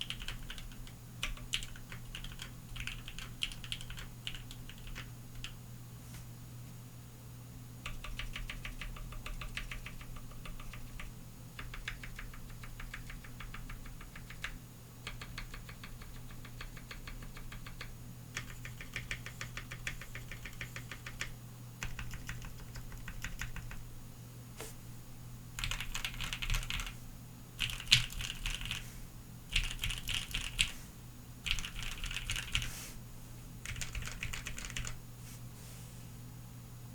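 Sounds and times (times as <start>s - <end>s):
mechanical keyboard keys clicking: 0.0s - 5.5s, 7.8s - 23.8s, 25.6s - 26.9s, 27.6s - 28.8s, 29.5s - 30.7s, 31.5s - 32.7s, 33.6s - 35.0s.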